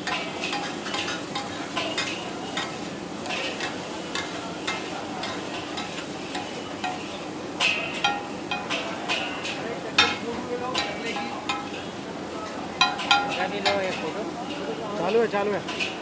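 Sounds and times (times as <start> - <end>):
metal spatula striking pan: 0.0 - 12.0, 12.8 - 14.2
food sizzling in a pan: 0.0 - 16.0.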